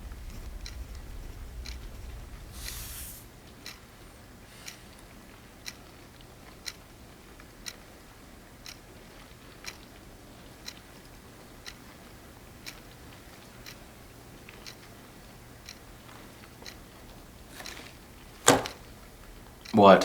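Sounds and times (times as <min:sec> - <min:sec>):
faint low room hum: 0:00.0 - 0:20.0
clock ticking: 0:01.6 - 0:02.2, 0:03.4 - 0:10.0, 0:10.6 - 0:18.9, 0:19.6 - 0:20.0.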